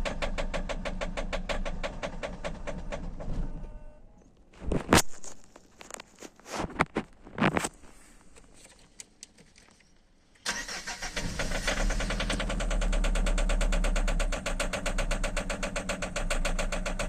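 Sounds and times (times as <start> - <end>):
starter motor cranking engine: 10.4 - 17.0.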